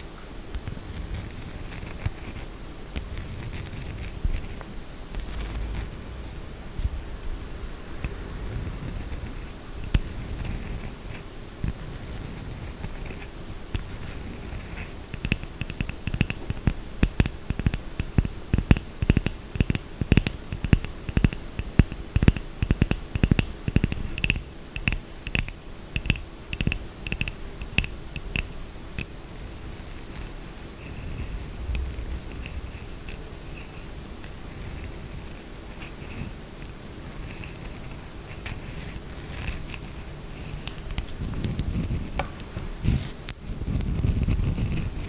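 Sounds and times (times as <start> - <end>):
fingernails scratching soap: 0.6 - 6.5, 8.0 - 42.2, 42.8 - 45.0
fingernails tapping soap: 15.2 - 29.1.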